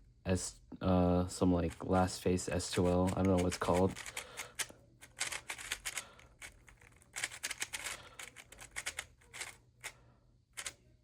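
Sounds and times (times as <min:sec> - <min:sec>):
puzzle cube faces clicking: 0:02.8 - 0:09.6.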